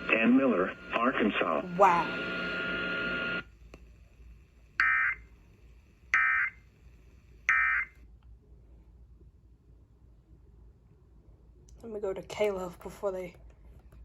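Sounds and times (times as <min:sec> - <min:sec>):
steady buzzing tone: 0:00.0 - 0:03.8.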